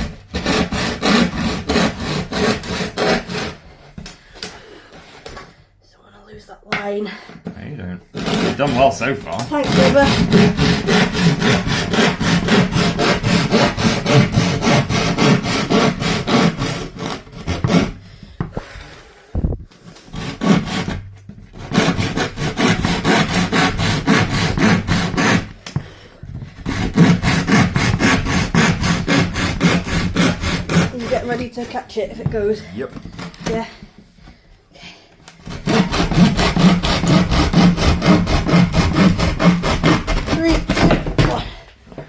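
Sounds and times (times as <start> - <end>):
hand saw cutting wood: 0.0 - 3.7, 8.1 - 18.0, 19.8 - 25.8, 26.4 - 33.9, 35.4 - 41.5.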